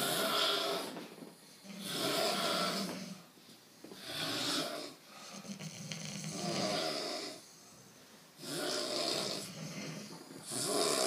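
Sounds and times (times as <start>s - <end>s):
person snoring: 8.4s - 11.0s.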